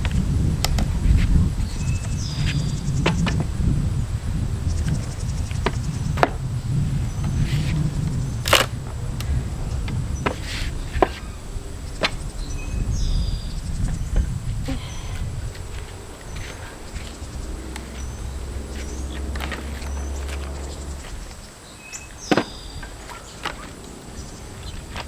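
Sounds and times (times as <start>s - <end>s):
steady low rumble: 0.0s - 25.0s
wood knocking and cracking: 8.4s - 8.7s.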